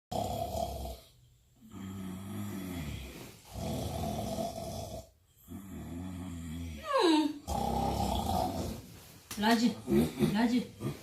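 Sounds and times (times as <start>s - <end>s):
man snoring: 0.1s - 8.7s.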